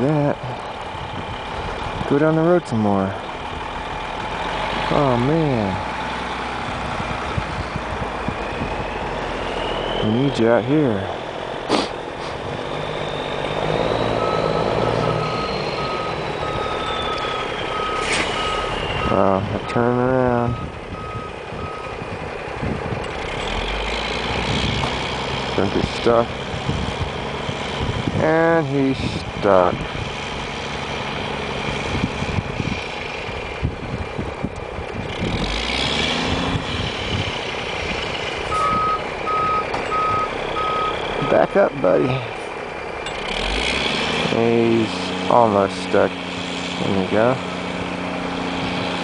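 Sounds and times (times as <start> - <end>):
truck engine running: 0.0 - 49.0
reversing alarm beeps: 12.7 - 19.8, 20.4 - 21.9, 38.5 - 42.3.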